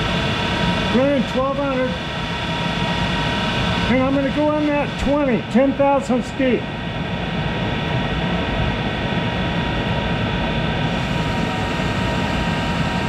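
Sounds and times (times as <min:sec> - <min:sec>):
high even whines: 0:10.8 - 0:13.0
lathe running: 0:10.9 - 0:13.0.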